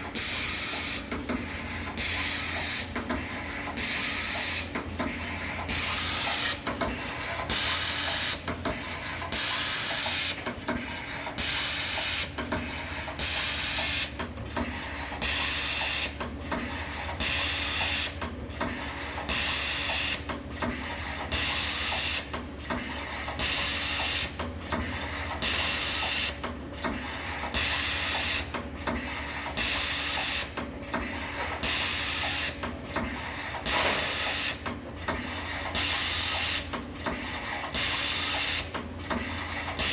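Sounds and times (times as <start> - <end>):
short machine hiss: 33.7 - 34.4.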